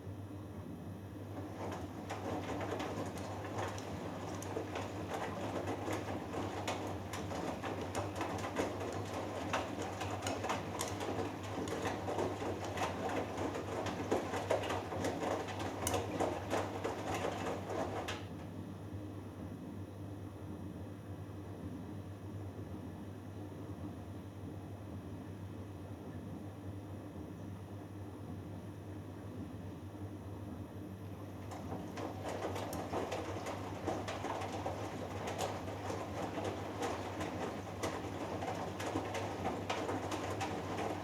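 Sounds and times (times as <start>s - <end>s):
washing machine drum tumbling: 1.2s - 18.5s, 31.3s - 41.0s.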